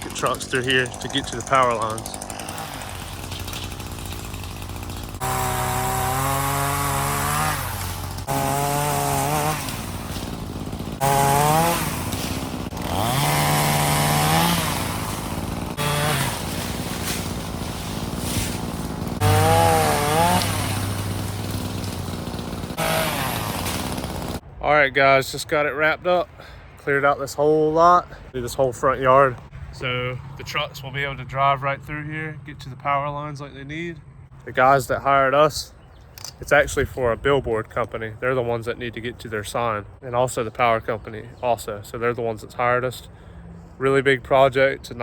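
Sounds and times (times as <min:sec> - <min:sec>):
chainsaw revving and cutting: 0:00.0 - 0:24.4.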